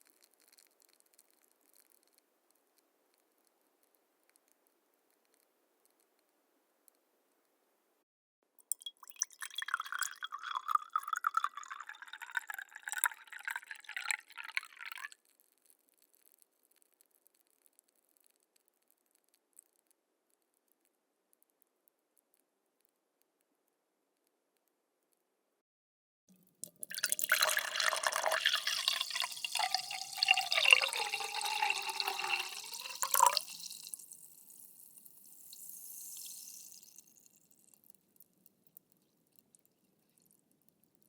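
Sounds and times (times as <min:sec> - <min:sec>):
liquid pouring into glass: 0:08.6 - 0:15.2, 0:26.6 - 0:38.0.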